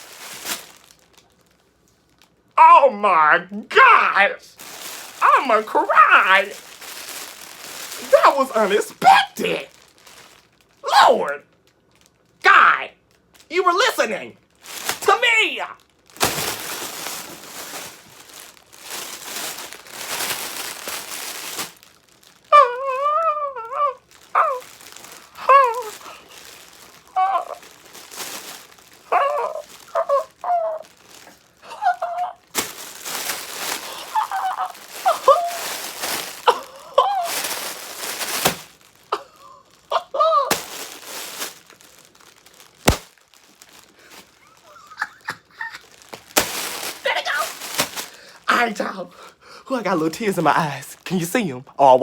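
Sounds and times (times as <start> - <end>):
rustling noise: 0.0 - 2.2, 4.6 - 9.0, 14.0 - 15.4, 16.1 - 22.6, 24.4 - 39.2, 39.8 - 48.8
person crying and sobbing: 22.5 - 24.6, 25.3 - 26.4, 27.1 - 27.6, 29.1 - 30.9, 31.6 - 32.5, 33.8 - 37.7, 39.1 - 40.8, 44.4 - 46.0.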